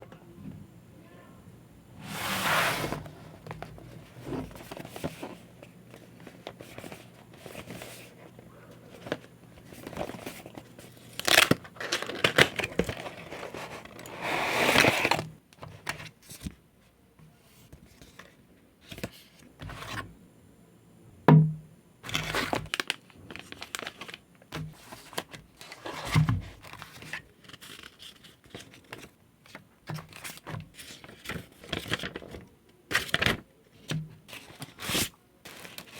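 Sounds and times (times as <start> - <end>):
plastic packaging crinkling: 3.4 - 15.3, 22.0 - 26.0, 26.6 - 33.4, 34.3 - 35.9.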